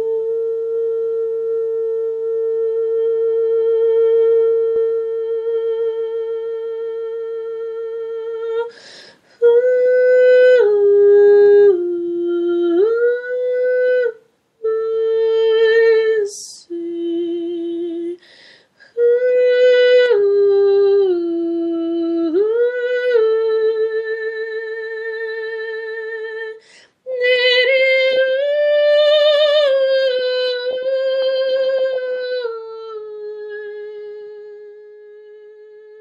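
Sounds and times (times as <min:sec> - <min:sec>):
woman singing wordless notes: 0:00.0 - 0:36.0
singer breathing in: 0:08.7 - 0:09.3, 0:18.2 - 0:18.8.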